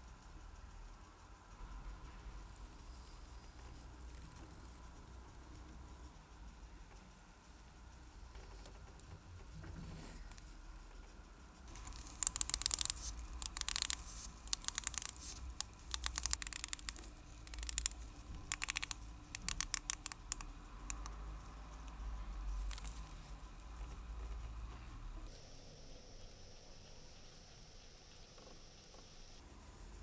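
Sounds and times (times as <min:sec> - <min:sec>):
watch clicking: 0:11.7 - 0:24.0.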